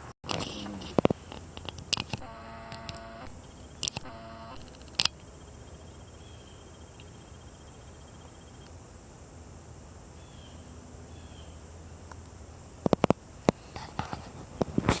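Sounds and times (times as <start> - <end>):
sharp clicks: 0.3 - 5.4
small motor whining: 0.4 - 8.7.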